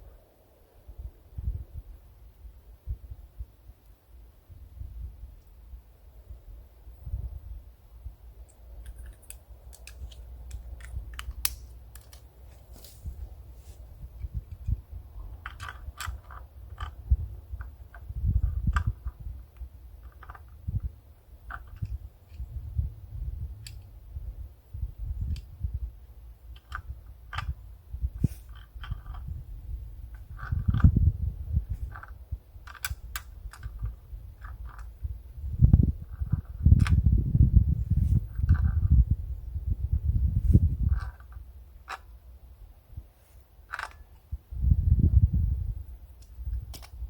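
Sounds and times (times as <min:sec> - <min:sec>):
plumbing fittings clicking: 0:08.4 - 0:12.2.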